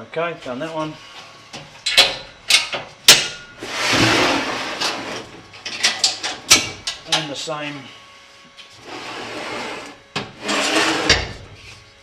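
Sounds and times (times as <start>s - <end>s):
scraping slide: 3.6s - 5.3s, 8.8s - 11.1s.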